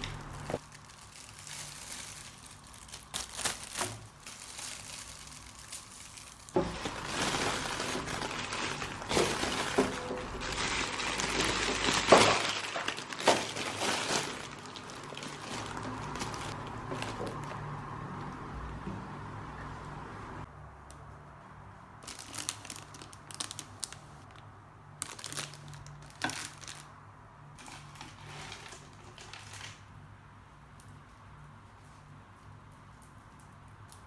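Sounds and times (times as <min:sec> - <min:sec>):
packaging crinkling and rustling: 0:00.0 - 0:17.6, 0:22.0 - 0:27.0, 0:27.6 - 0:30.0.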